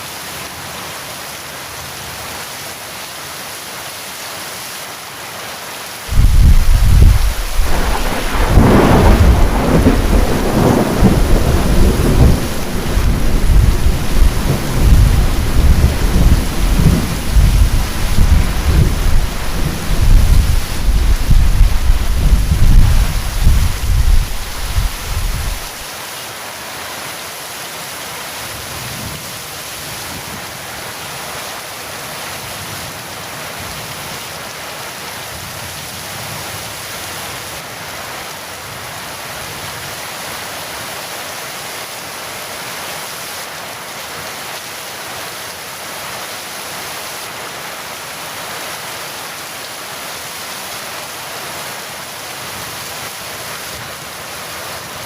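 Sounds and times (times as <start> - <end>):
heavy rain falling: 0.0 - 55.0
thunder rumble: 6.1 - 25.8.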